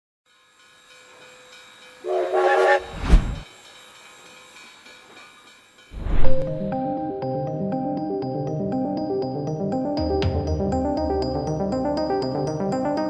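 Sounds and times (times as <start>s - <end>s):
faint steady steam hiss: 0.3s - 2.3s, 3.5s - 5.9s
music: 0.3s - 13.0s
steam locomotive whistle blasts: 2.0s - 3.3s.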